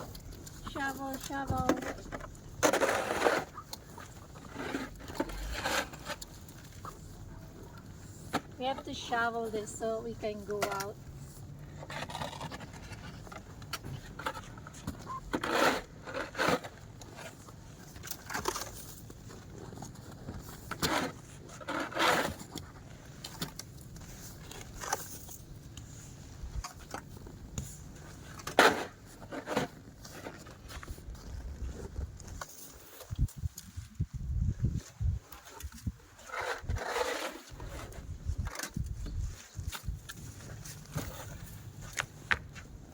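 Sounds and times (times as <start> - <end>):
snow shovel scraping snow: 2.6 - 6.2, 15.1 - 17.4, 20.4 - 22.6, 27.8 - 30.7, 36.1 - 38.2.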